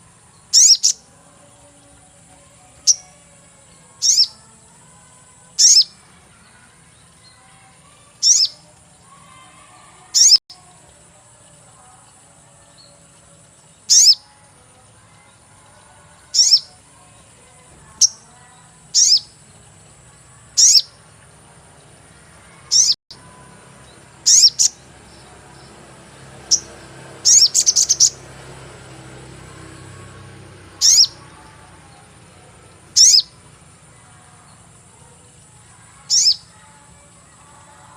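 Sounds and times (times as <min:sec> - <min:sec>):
bird chirping: 0:00.0 - 0:09.1, 0:10.1 - 0:10.4, 0:11.0 - 0:21.1, 0:22.5 - 0:25.8, 0:26.4 - 0:28.3, 0:30.7 - 0:33.6, 0:34.4 - 0:36.6.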